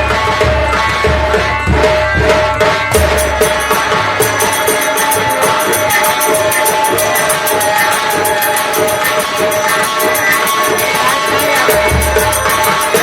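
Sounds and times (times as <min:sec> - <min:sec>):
hand percussion: 0:00.0 - 0:13.0
held instrumental tones: 0:02.8 - 0:13.0.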